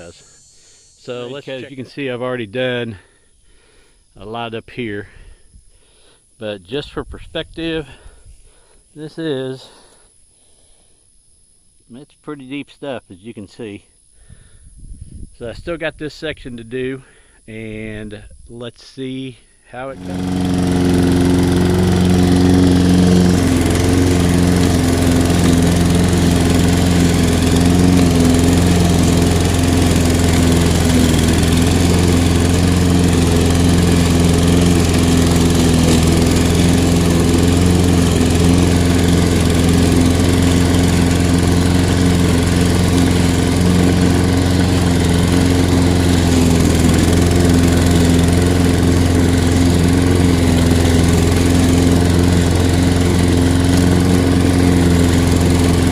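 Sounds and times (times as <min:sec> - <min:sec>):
lawn mower engine cutting grass: 0:00.0 - 0:02.1, 0:19.8 - 0:55.9.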